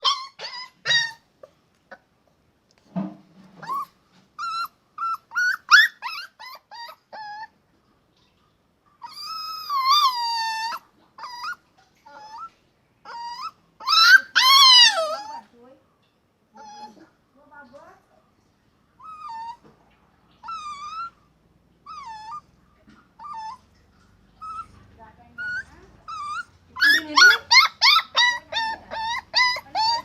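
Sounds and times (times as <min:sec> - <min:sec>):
dog whimpering and yipping: 0:00.0 - 0:02.1, 0:03.6 - 0:07.6, 0:09.0 - 0:15.5, 0:16.6 - 0:17.1, 0:19.0 - 0:21.2, 0:21.8 - 0:24.8, 0:25.4 - 0:30.0.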